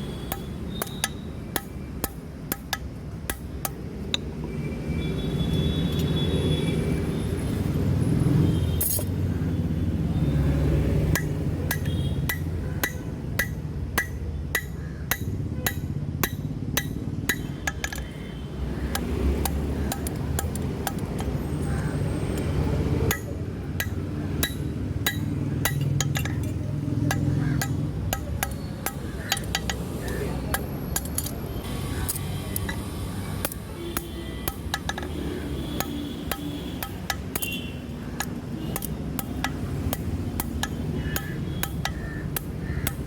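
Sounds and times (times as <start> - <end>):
hammer striking steel on anvil: 0.3 - 4.3, 11.1 - 18.0, 23.1 - 31.3, 33.4 - 35.2, 38.2 - 43.0.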